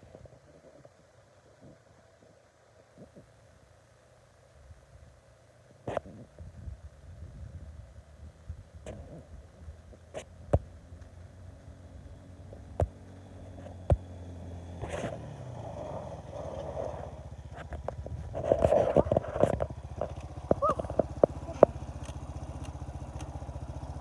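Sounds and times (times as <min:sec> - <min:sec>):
atv engine running: 0:03.2 - 0:24.0
sharp clicks: 0:19.0 - 0:23.4.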